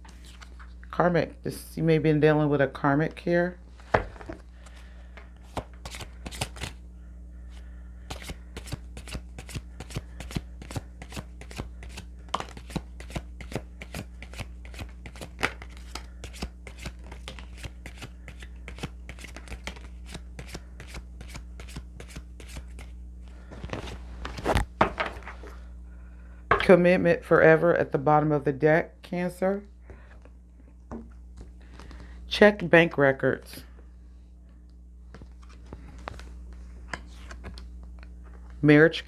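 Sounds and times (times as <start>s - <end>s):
cards being shuffled: 3.8s - 6.8s, 7.5s - 25.4s.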